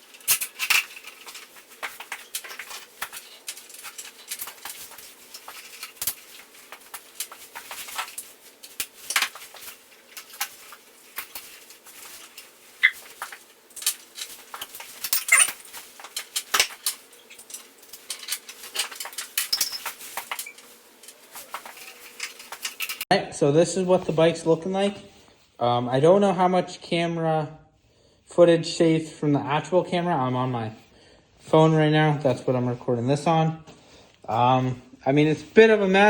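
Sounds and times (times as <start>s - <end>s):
tools and metal parts clicking: 0.0s - 23.1s.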